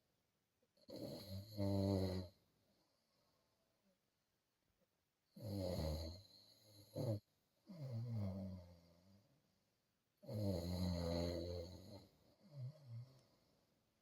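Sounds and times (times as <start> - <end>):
person snoring: 0.9 - 2.4, 5.4 - 8.9, 10.2 - 13.4.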